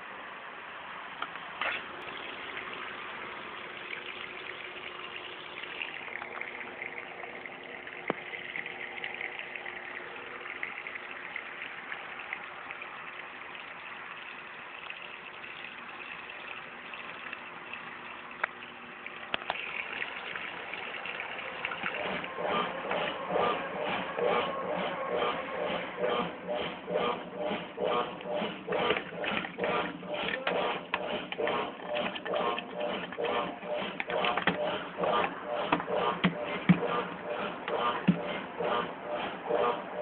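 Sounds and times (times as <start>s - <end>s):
washing machine water rushing: 1.5s - 40.0s
low hum: 19.6s - 40.0s.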